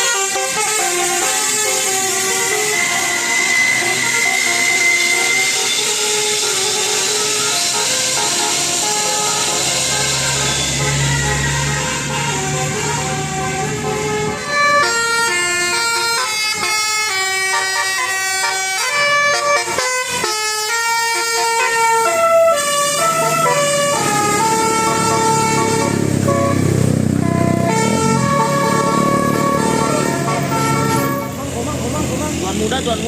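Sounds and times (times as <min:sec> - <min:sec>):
bus air horn melody: 0:00.0 - 0:33.0.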